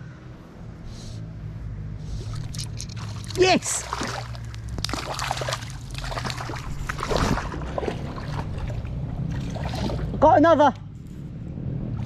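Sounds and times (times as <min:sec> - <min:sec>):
low rumble: 0:00.0 - 0:12.0
river water splashing: 0:02.0 - 0:10.7.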